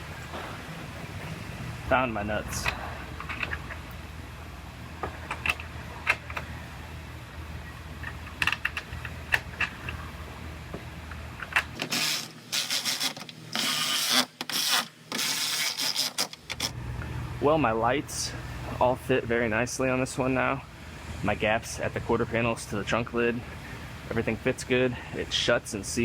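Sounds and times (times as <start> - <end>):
rasping bursts: 11.8 - 16.7.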